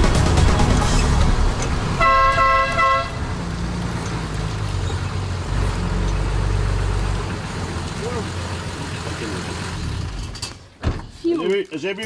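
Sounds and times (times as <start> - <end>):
vehicle engine running: 0.0 - 10.8
vehicle horn: 1.8 - 3.3.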